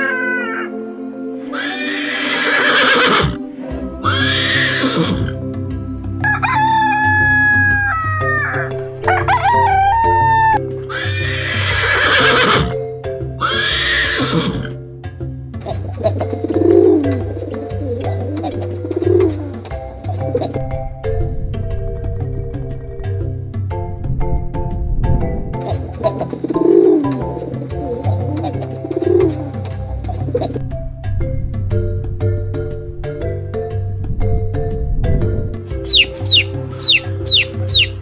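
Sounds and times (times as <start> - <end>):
rooster crowing: 1.5 - 3.4, 4.0 - 5.4, 6.2 - 12.8, 13.4 - 14.7, 35.9 - 38.0
music with bass beat: 3.7 - 38.0.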